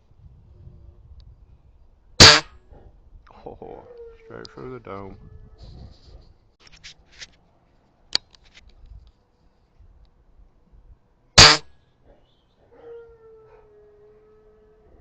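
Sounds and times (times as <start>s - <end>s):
air rifle shot: 11.4s - 11.7s.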